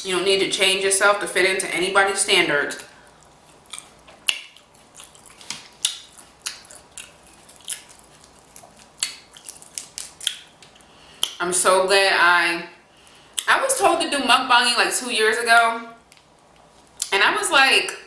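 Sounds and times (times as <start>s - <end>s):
crunchy biting and chewing: 2.8s - 11.4s.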